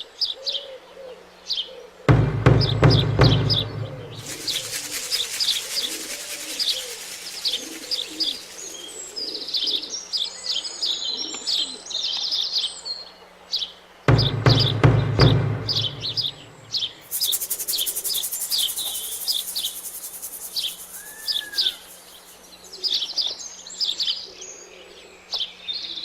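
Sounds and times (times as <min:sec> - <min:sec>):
songbirds chirping and trilling: 0:00.0 - 0:26.0
dove cooing: 0:00.4 - 0:02.1, 0:04.2 - 0:10.1, 0:11.0 - 0:11.8
knocks: 0:14.1 - 0:16.4.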